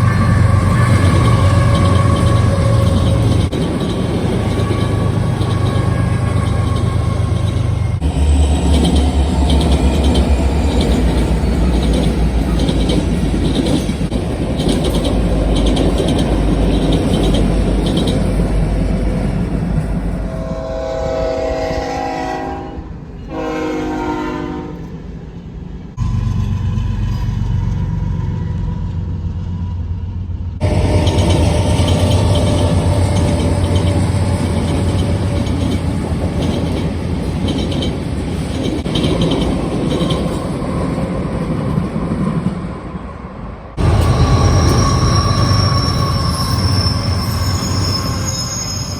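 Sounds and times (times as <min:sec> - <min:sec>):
wheels clicking over rails: 0:00.0 - 0:19.8, 0:30.6 - 0:40.6
freight train rumbling: 0:00.0 - 0:48.9
locomotive air horn: 0:20.3 - 0:24.9.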